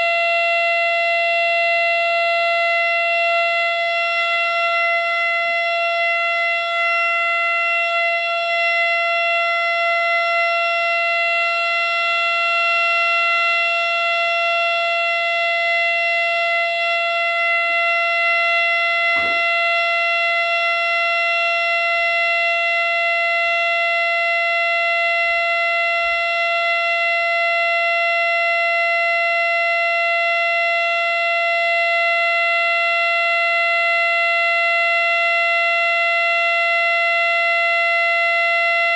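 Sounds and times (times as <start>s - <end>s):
siren steady high tone: 0.0s - 38.9s.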